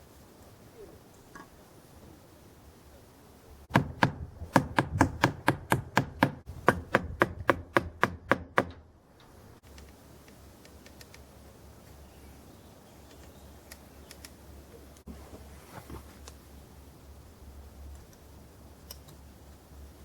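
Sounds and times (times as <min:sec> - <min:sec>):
hammer striking wood: 0:03.7 - 0:08.8.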